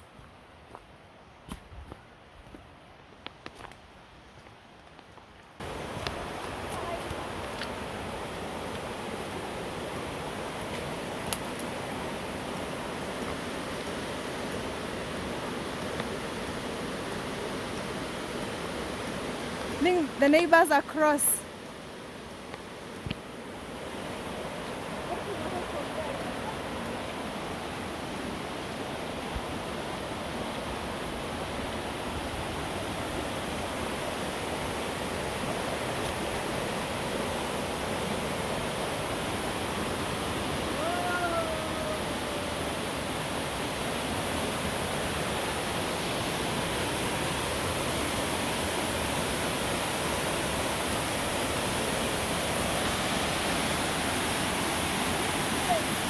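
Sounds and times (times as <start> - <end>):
waterfall rushing: 23.6 - 56.0.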